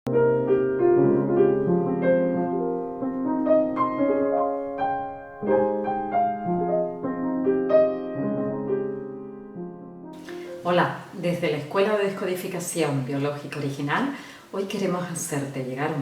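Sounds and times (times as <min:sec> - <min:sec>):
piano music: 0:00.1 - 0:12.7.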